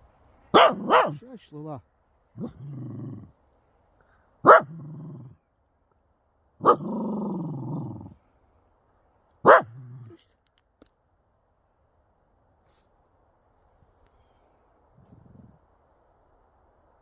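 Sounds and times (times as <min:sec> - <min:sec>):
dog barking and growling: 0:00.5 - 0:01.3, 0:02.4 - 0:03.3, 0:04.4 - 0:05.4, 0:06.6 - 0:08.2, 0:09.4 - 0:10.2.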